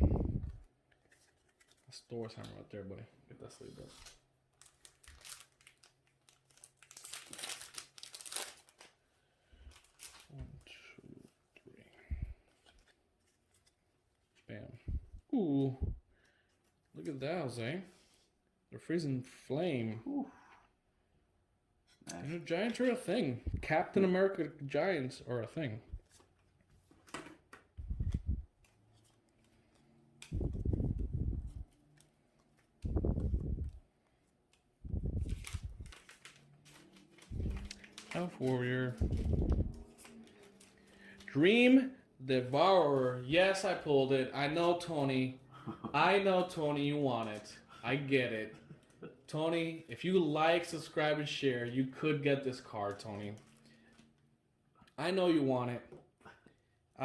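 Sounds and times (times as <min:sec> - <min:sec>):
thin plastic crinkling: 0:03.8 - 0:10.4, 0:27.8 - 0:41.7.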